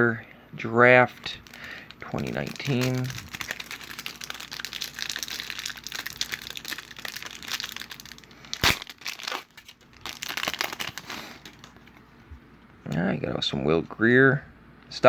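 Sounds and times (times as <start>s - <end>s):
wrapper crinkling and tearing: 1.0s - 12.1s
sharp loud crack: 8.6s - 8.9s.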